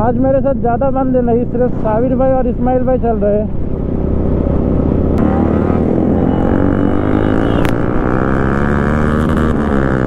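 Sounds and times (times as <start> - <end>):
motorcycle engine accelerating: 3.5 - 10.0.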